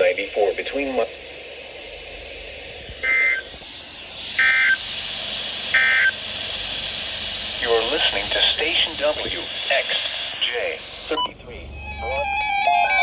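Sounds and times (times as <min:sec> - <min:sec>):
steady hiss: 0:00.0 - 0:11.2
digital data tones: 0:11.2 - 0:13.0.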